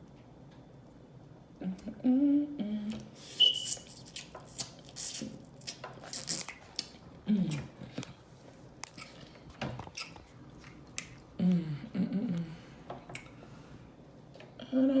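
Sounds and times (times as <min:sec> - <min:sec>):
wet mouth smacking: 0:09.9 - 0:11.2.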